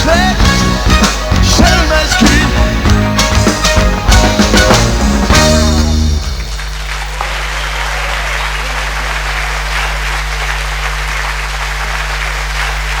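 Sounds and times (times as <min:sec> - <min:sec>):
audience applauding: 0:05.8 - 0:13.0.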